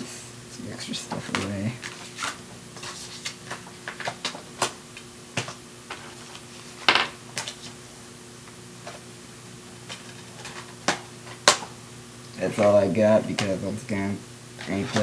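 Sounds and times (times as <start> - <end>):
low electrical hum: 0.0 - 15.0
packaging clicks and taps: 12.5 - 13.7.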